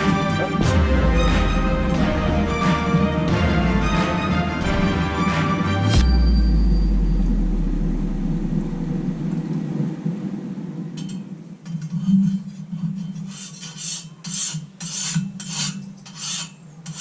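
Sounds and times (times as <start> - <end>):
low rumble: 0.0 - 11.0
steady low hum: 6.0 - 11.6
file scraping on steel blade: 13.0 - 17.0.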